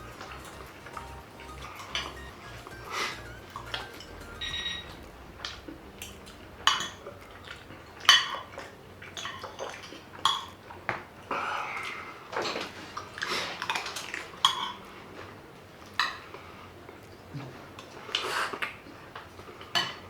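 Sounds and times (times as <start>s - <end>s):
cutlery clinking on dishes: 12.4s - 14.8s, 19.6s - 20.0s.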